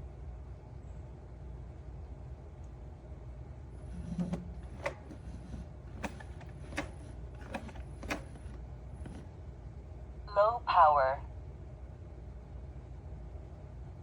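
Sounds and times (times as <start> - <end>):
robot vacuum knocking and clicking: 3.9 - 9.3.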